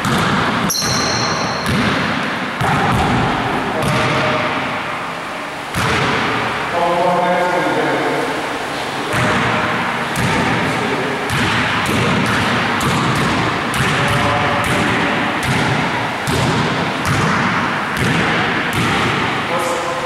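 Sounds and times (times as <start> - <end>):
basketball bouncing on floor: 0.0 - 4.4, 5.7 - 6.4, 9.1 - 10.6, 11.3 - 19.3
steady background hiss: 0.0 - 20.0.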